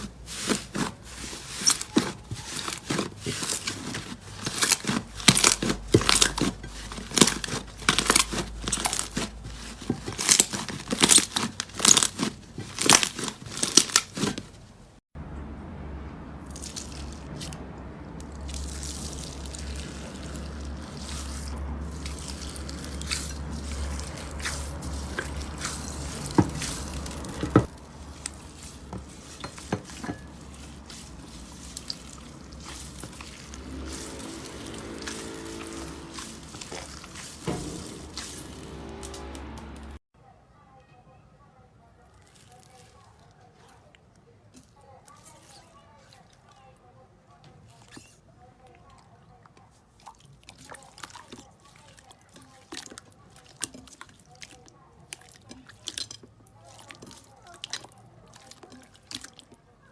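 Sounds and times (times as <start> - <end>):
slime crackling and popping: 0.0 - 14.3
slime squishing: 0.0 - 14.7, 16.4 - 40.0, 42.1 - 46.8, 47.4 - 59.9
low hum: 15.2 - 29.5, 30.2 - 40.0.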